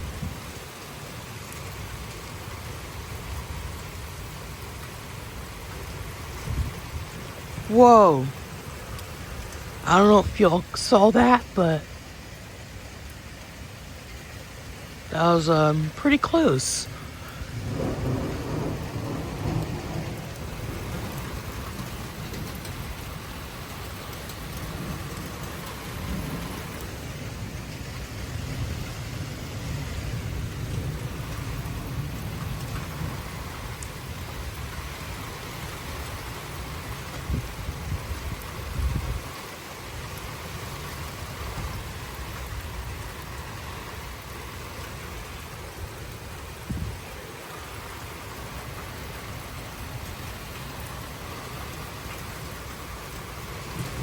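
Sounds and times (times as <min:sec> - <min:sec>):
wind buffeting microphone: 0:00.0 - 0:00.6, 0:06.0 - 0:07.7, 0:16.9 - 0:27.0, 0:27.8 - 0:39.4, 0:45.2 - 0:47.2
steady rain: 0:00.0 - 0:54.0
low thunder rumble: 0:16.8 - 0:39.3, 0:48.2 - 0:54.0.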